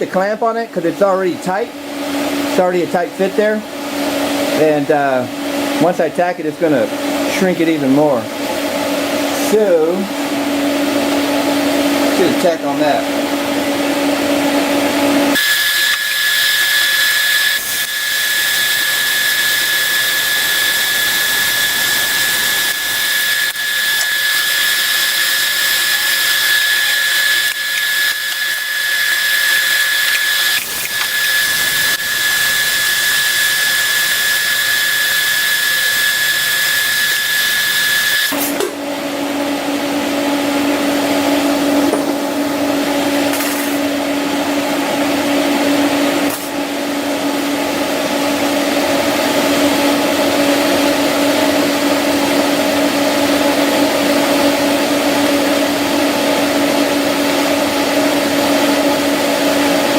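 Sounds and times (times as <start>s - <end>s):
welding arc hissing and whining: 0.0s - 39.0s, 39.8s - 59.9s
machine hum: 0.7s - 36.6s.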